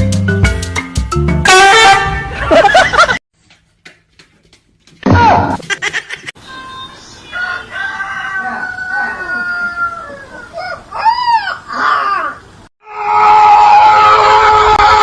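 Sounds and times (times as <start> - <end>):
animal calling: 8.4 - 12.5.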